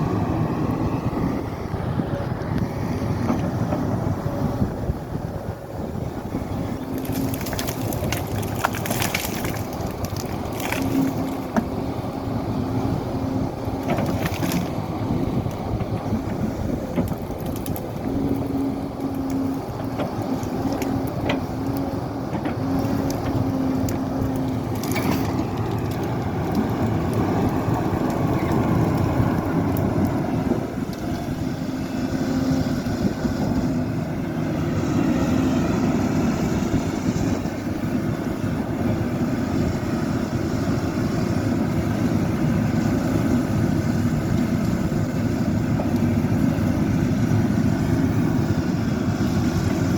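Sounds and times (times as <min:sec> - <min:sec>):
excavator engine running: 0:00.0 - 0:49.9
material cracking and crunching: 0:06.9 - 0:11.6, 0:13.8 - 0:14.8, 0:16.8 - 0:18.5, 0:22.4 - 0:30.2.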